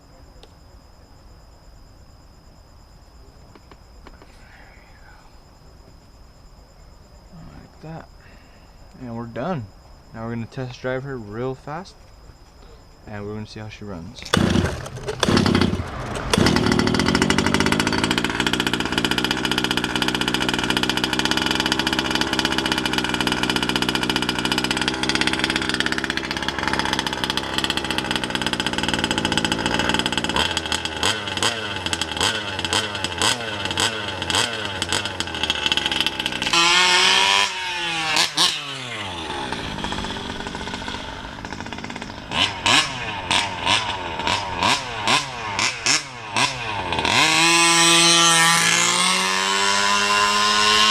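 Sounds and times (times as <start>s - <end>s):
toy truck two-stroke engine revving: 14.2s - 50.9s.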